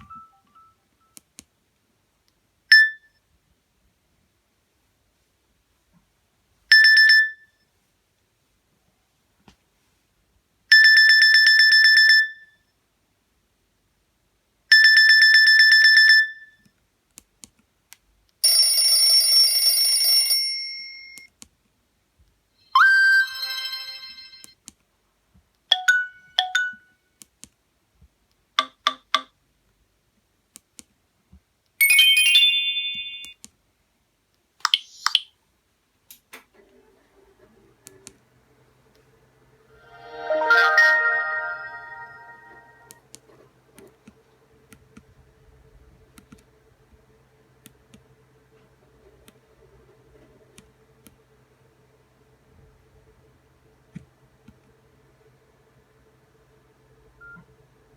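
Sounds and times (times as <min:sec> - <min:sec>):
phone alert tones and chimes: 0:00.0 - 0:01.2, 0:22.7 - 0:24.5, 0:31.8 - 0:33.4, 0:39.9 - 0:43.0.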